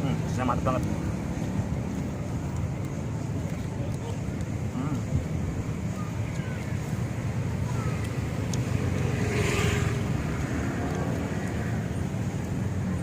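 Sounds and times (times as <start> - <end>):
street traffic: 0.0 - 13.0
vehicle passing: 5.9 - 13.0.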